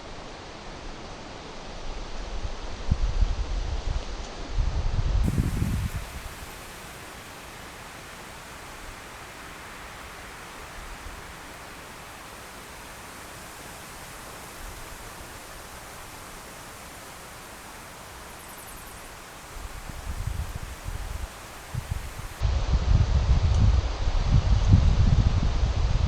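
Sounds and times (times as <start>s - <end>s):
wind through foliage: 5.2s - 22.9s
wind thumping on microphone: 5.2s - 26.0s.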